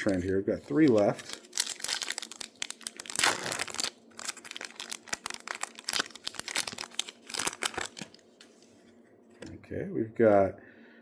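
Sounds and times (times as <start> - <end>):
foil wrapper crinkling and tearing: 0.0 - 8.3.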